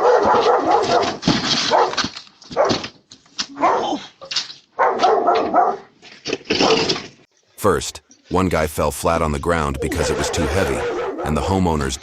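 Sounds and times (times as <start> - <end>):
dog barking: 0.0 - 2.8, 3.6 - 4.0, 4.8 - 5.9, 10.6 - 11.4.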